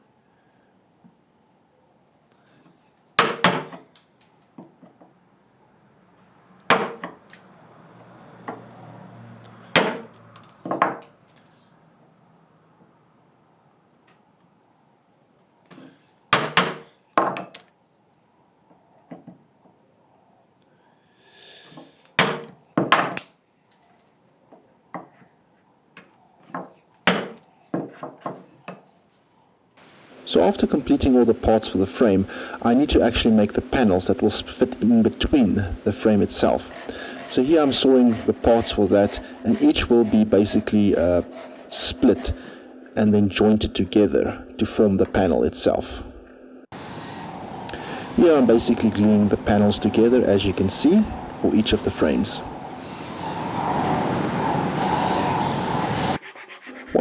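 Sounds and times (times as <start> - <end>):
wooden knocks and taps: 9.8 - 11.1.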